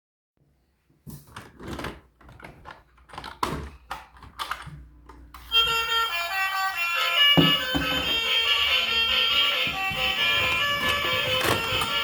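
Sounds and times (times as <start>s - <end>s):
irregular clattering and rustling: 9.6s - 12.0s.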